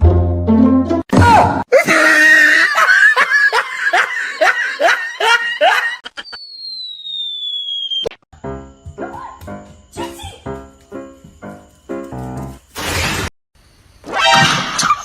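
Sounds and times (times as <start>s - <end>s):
person laughing hard: 1.7s - 6.4s
whistling tone sliding downward: 6.0s - 8.2s.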